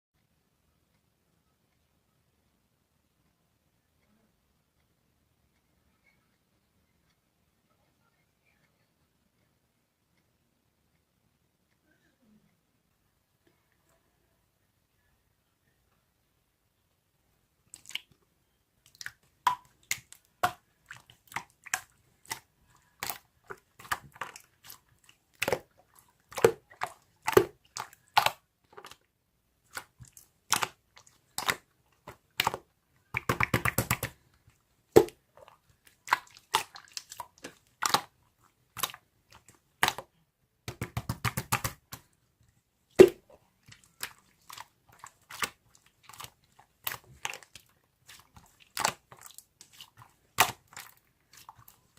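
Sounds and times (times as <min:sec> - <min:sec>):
sharp clicks and taps: 0:31.4 - 0:34.2, 0:40.6 - 0:42.2.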